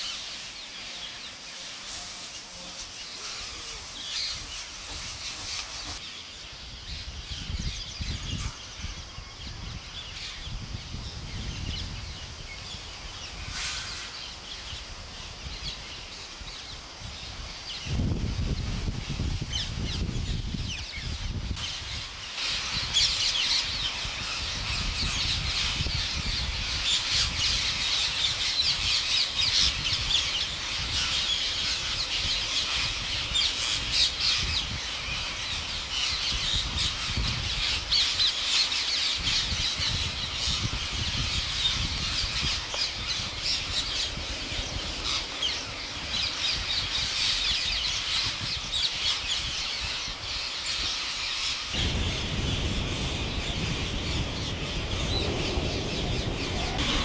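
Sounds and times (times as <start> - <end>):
low rumble: 51.8 - 57.0.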